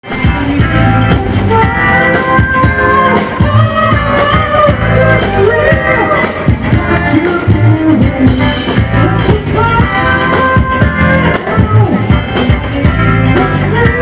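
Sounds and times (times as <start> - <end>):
guitar: 0.0 - 14.0
rock song with singing: 0.0 - 14.0.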